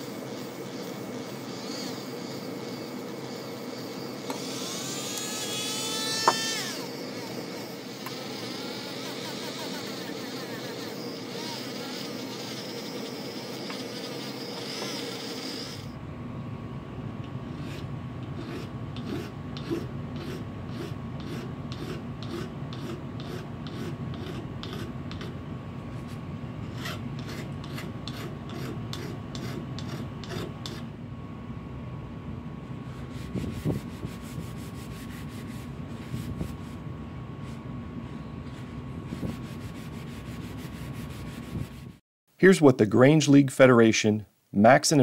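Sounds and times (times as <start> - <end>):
rasping strokes on pliers: 7.8 - 15.9, 17.6 - 25.4, 26.7 - 30.9.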